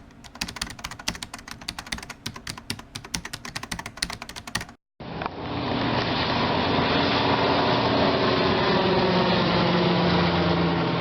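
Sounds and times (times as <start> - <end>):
keyboard typing clicks: 0.0 - 4.8
radial aircraft engine running: 5.0 - 11.0.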